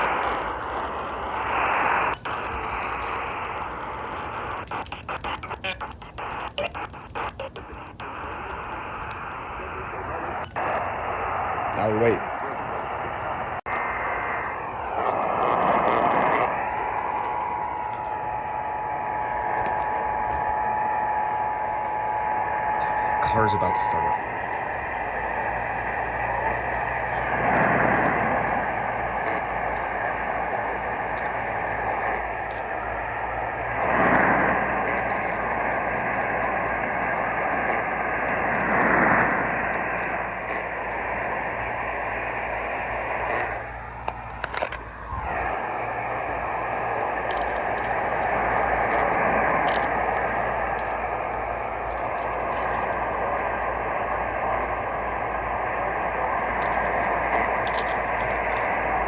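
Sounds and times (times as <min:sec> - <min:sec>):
clicks: 0:02.0 - 0:08.2, 0:43.2 - 0:45.6.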